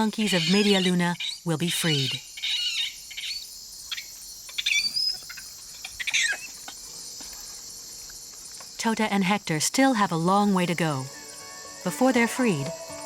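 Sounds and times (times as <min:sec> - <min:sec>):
bird calls: 0:00.0 - 0:07.6
high-pitched insect drone: 0:00.0 - 0:13.0.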